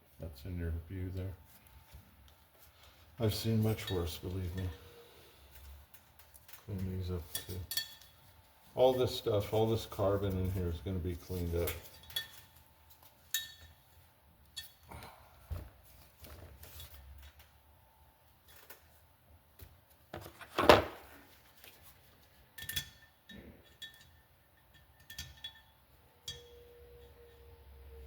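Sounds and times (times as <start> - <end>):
faint steady tone: 22.6 - 28.0.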